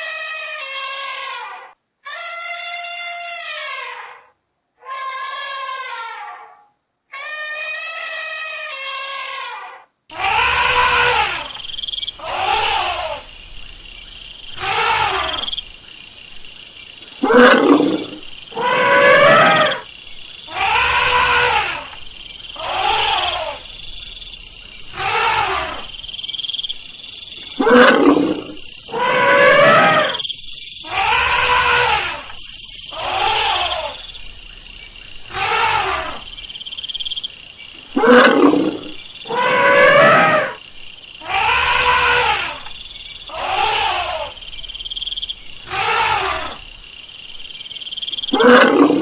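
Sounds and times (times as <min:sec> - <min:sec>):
elephant calling: 0:07.1 - 0:37.2, 0:41.2 - 0:42.7, 0:43.3 - 0:44.4, 0:45.6 - 0:46.7.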